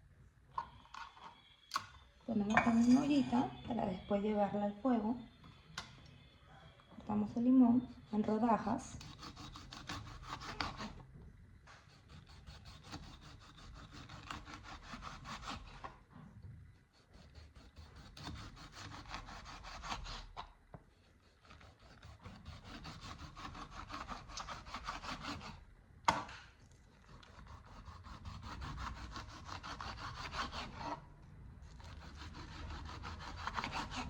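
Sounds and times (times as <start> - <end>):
knife sawing through a lemon: 8.9 - 11.0, 11.9 - 15.8, 17.0 - 20.4, 21.2 - 25.6, 27.2 - 31.0, 31.7 - 34.0.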